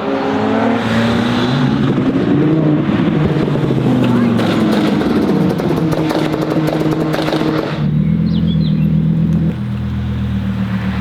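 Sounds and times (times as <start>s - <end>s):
sports car engine: 0.0s - 11.0s
exhaust crackles and pops: 3.1s - 7.9s.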